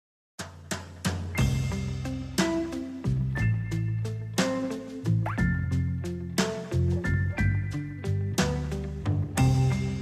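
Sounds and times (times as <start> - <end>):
drum hits: 0.4 - 2.7
held bass notes: 1.3 - 10.0.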